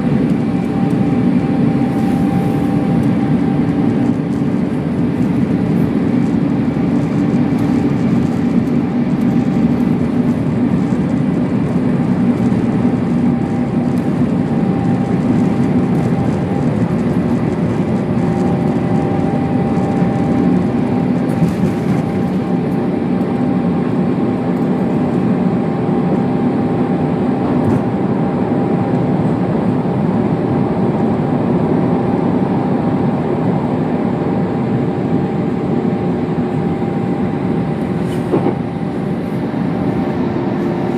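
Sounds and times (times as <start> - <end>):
faint steady whine: 0.0 - 27.2
airliner engines roaring: 0.0 - 40.9.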